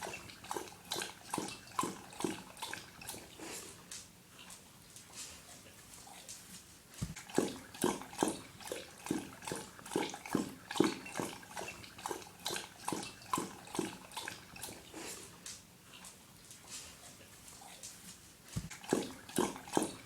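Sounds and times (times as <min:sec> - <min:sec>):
dog lapping water: 0:00.0 - 0:05.4, 0:07.0 - 0:17.4, 0:18.5 - 0:20.0.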